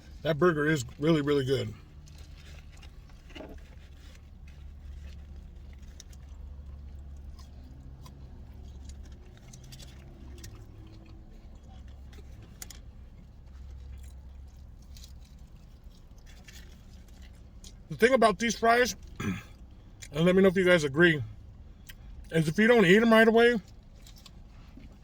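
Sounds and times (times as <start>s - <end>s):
man chewing food: 1.8s - 17.9s, 23.6s - 25.0s.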